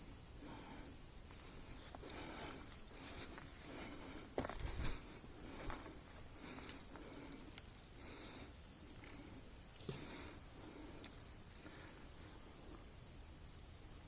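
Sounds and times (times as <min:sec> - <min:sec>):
insect high trill: 0:00.0 - 0:14.0
faint rustling: 0:00.4 - 0:08.4.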